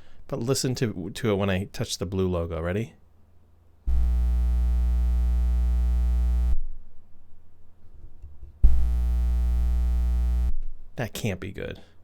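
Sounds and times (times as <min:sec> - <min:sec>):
buzzy electrical hum: 0:03.8 - 0:07.0, 0:08.5 - 0:11.0.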